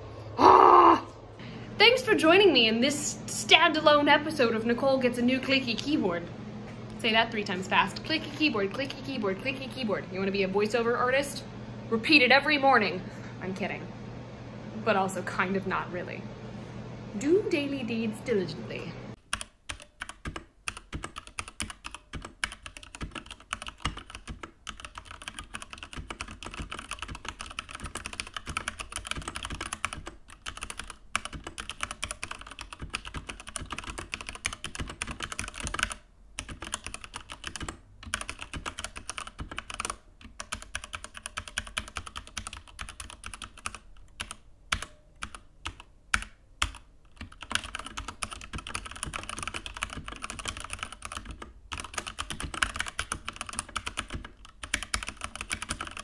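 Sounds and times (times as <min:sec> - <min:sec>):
mechanical keyboard typing: 0:19.3 - 0:56.0.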